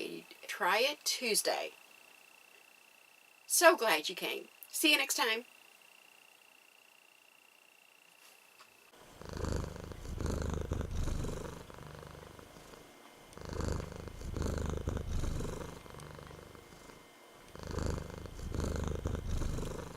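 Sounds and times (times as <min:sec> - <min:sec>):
cat purring: 0:09.0 - 0:19.9.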